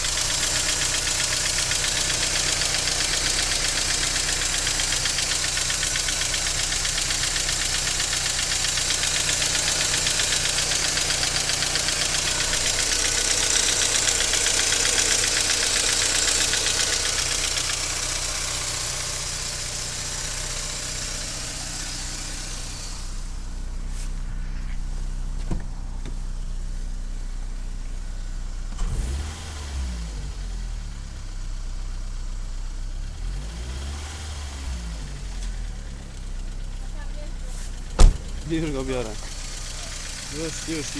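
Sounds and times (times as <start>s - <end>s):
car engine idling: 0.0s - 40.9s
thump: 25.4s - 26.2s, 38.0s - 38.4s.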